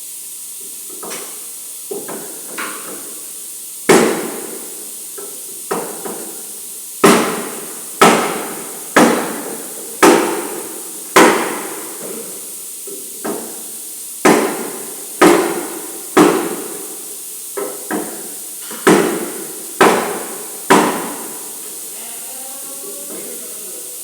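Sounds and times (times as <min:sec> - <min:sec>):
hammer blows on sheet metal: 0:07.0 - 0:12.0, 0:17.9 - 0:21.6.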